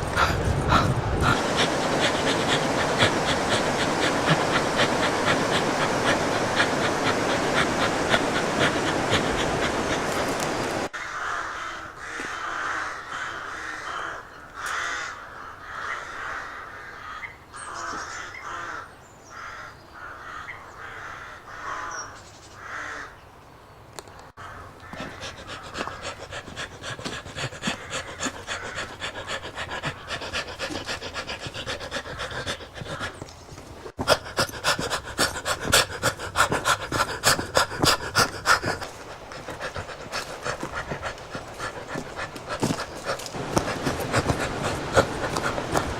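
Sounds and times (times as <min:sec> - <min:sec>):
person panting hard: 0:00.0 - 0:10.9, 0:24.9 - 0:45.9
running footfalls: 0:32.8 - 0:45.9.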